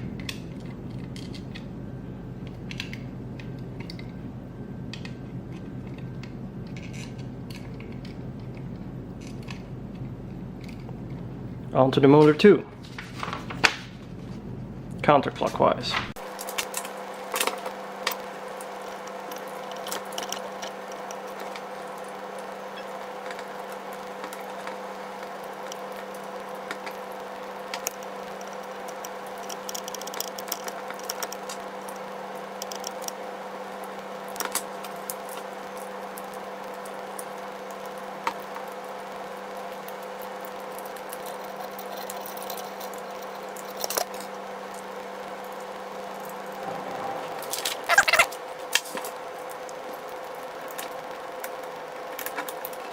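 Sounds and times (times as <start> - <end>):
steady low hum: 0.0 - 52.9.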